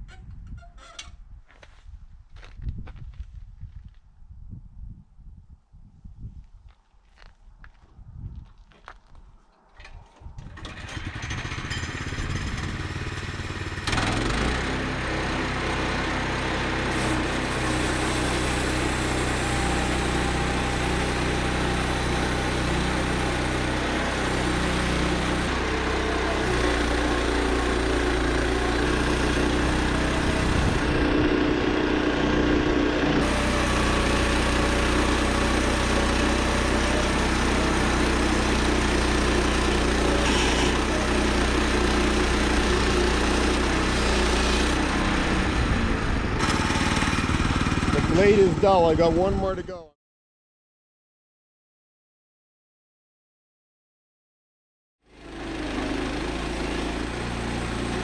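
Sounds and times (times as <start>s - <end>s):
gas engine running: 10.4s - 49.7s, 55.1s - 58.0s
band saw blade cutting log: 16.7s - 45.5s, 46.4s - 49.3s, 55.2s - 58.0s.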